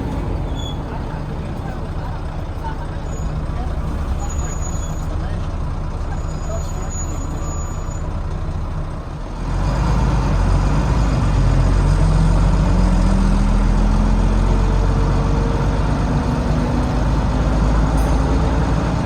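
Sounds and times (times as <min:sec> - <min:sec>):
diesel bus engine accelerating: 0:00.0 - 0:19.0.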